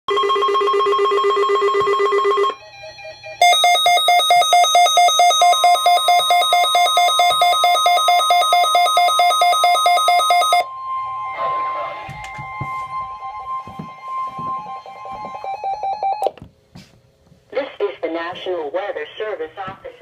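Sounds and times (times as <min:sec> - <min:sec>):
rapid electronic alarm beeping: 0:00.4 - 0:13.5
steady warning tone: 0:02.2 - 0:16.3.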